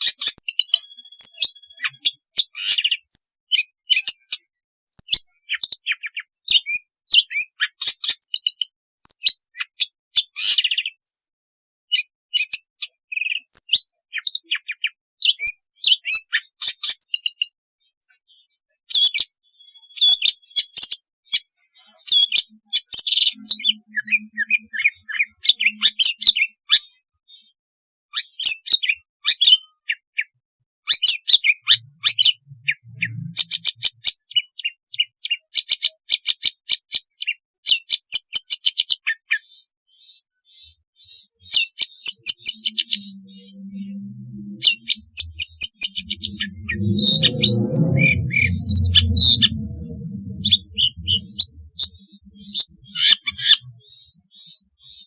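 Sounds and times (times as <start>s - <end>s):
shrike singing: 41.5s - 54.8s.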